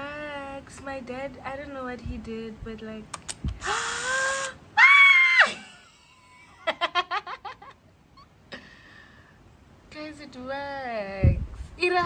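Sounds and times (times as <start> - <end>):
woman squealing with excitement: 3.6 - 5.9
woman laughing: 5.4 - 8.3.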